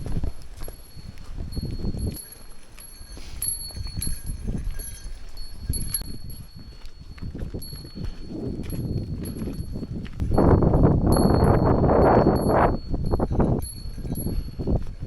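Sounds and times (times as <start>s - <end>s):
footsteps squelching in mud: 0.0s - 10.4s
wind rumble on microphone: 0.0s - 15.0s.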